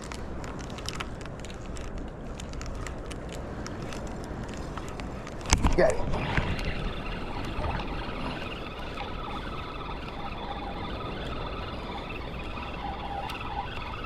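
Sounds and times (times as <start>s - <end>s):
water noise: 0.0s - 14.0s
wind: 0.0s - 14.0s
fishing reel whirring: 3.8s - 14.0s.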